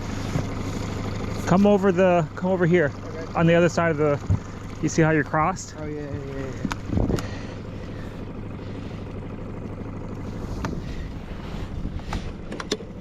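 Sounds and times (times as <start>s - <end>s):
boat motor rumbling: 0.0s - 13.0s
wind buffeting microphone: 6.8s - 7.3s, 10.6s - 12.5s.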